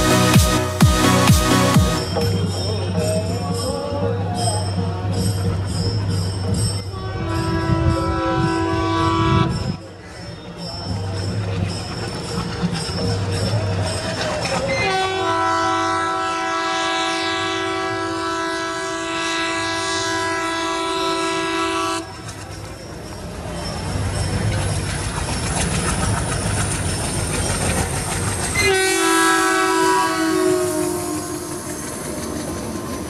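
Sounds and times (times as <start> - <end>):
locomotive air horn blast: 7.0 - 9.8, 14.8 - 22.2, 28.6 - 31.8
train wheels clattering over rails: 9.9 - 15.3, 21.3 - 33.0.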